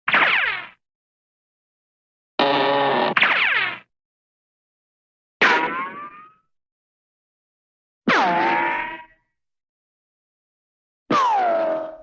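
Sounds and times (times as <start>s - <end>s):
cartoon boing falling in pitch: 5.4s - 6.4s.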